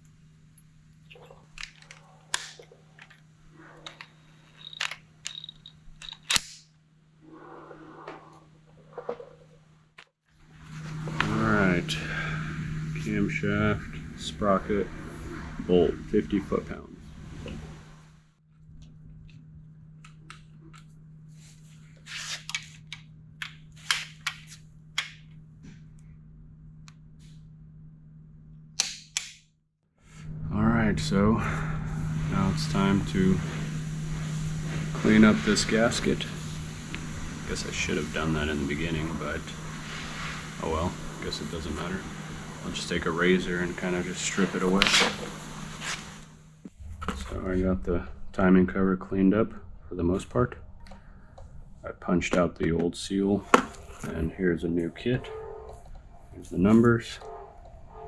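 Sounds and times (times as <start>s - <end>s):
metal tools clinking: 3.8s - 6.4s.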